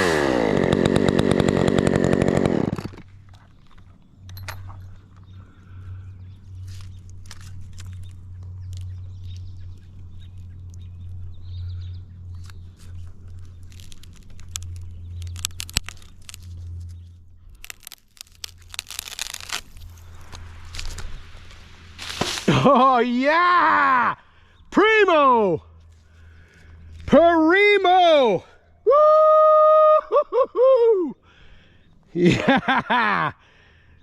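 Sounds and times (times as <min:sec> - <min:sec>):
chainsaw idling: 0:00.0 - 0:03.3
wood and branches cracking: 0:00.0 - 0:11.3, 0:12.2 - 0:23.9
sharp crack of tree top: 0:12.4 - 0:17.0, 0:17.6 - 0:22.8.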